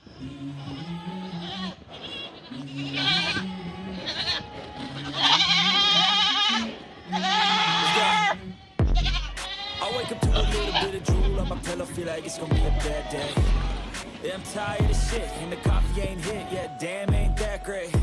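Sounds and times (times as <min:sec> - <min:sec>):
background music with bass line: 0:08.8 - 0:09.6, 0:10.2 - 0:14.2, 0:14.8 - 0:18.0.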